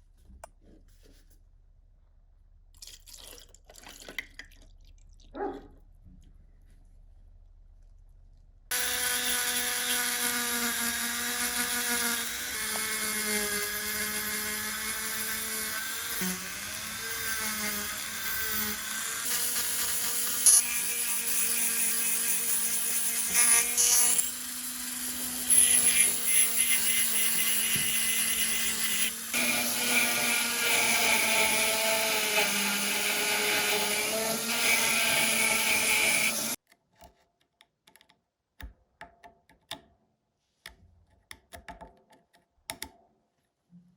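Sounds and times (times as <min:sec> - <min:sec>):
high-speed power tool whining: 0:08.7 - 0:36.6.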